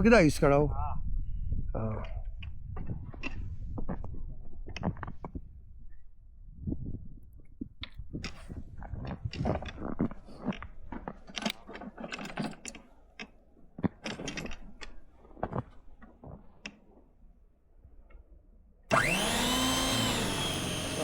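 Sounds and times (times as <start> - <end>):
small electric motor whining: 18.9 - 21.0.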